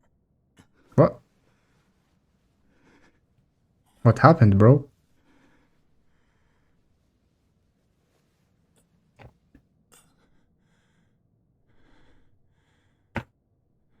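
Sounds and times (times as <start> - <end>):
faint breathing: 0.6 - 4.1, 5.0 - 9.0, 9.9 - 13.1.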